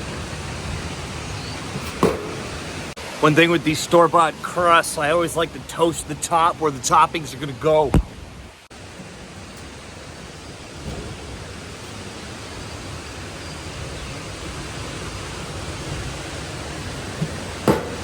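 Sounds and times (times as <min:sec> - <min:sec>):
strong wind on microphone: 0:00.0 - 0:03.0, 0:07.9 - 0:18.0
rough lake waves: 0:00.0 - 0:18.0.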